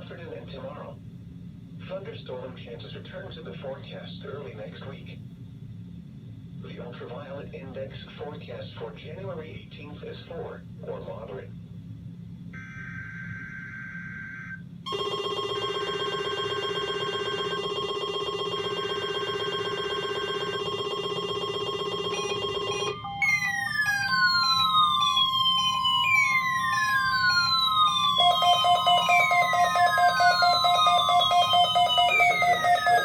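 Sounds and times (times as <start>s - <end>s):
pulsing low beep: 12.6s - 33.0s
buzzy alert tone: 16.5s - 33.0s
digital data bursts: 16.5s - 33.0s
falling siren-like sweep: 22.1s - 33.0s.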